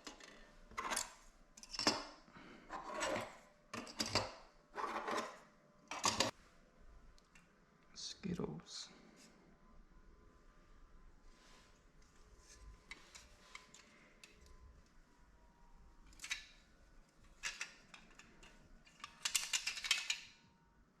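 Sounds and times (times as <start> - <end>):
plastic guards clicking and rattling: 17.2 - 20.3.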